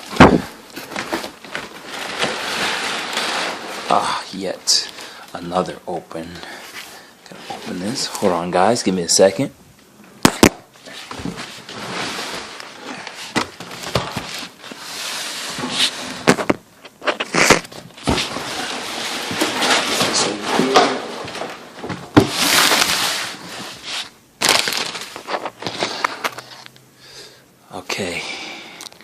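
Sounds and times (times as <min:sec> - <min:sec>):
cardboard rustling and crinkling: 0:00.0 - 0:06.1, 0:10.8 - 0:26.7.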